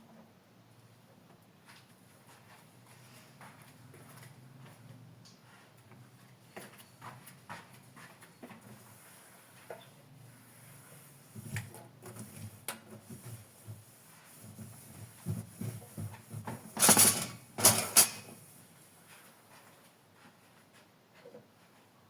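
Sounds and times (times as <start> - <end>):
dishes knocking and clinking: 16.7 - 18.4.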